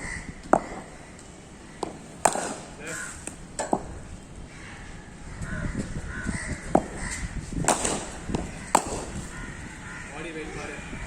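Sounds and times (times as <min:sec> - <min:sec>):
crows cawing: 0:00.0 - 0:03.4, 0:04.5 - 0:07.4, 0:08.0 - 0:11.0
sharp knocks: 0:01.8 - 0:04.0, 0:07.6 - 0:09.4.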